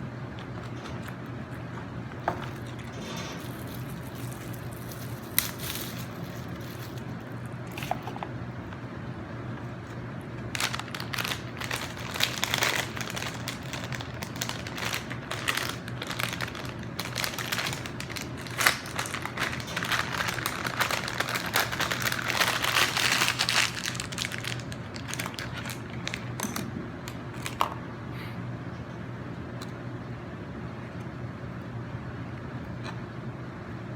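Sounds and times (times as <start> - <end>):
lettuce crinkling and crunching: 2.4 - 8.8, 10.4 - 26.6.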